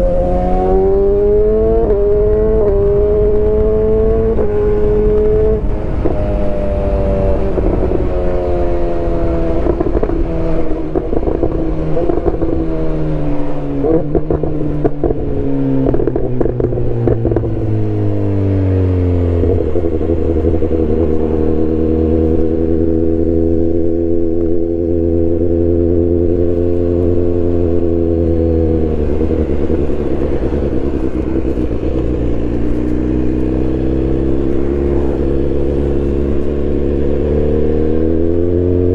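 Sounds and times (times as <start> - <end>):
loud motorcycle engine: 0.0 - 38.9
exhaust popping and crackling: 19.3 - 38.6.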